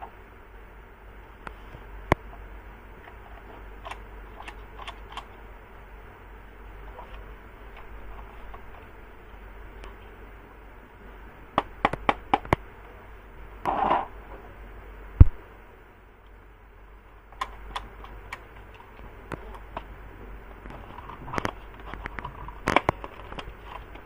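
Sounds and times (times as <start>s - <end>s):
sharp clicks: 3.8s - 5.4s, 17.4s - 19.9s.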